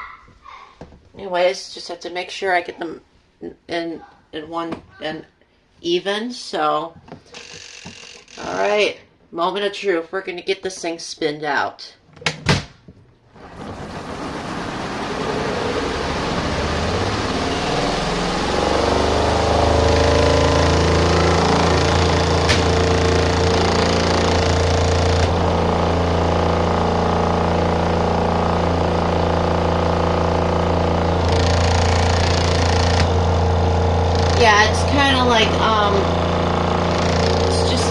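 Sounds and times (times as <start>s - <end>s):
spin dryer motor hum: 13.4s - 37.9s
spin dryer door rattling: 15.8s - 37.9s.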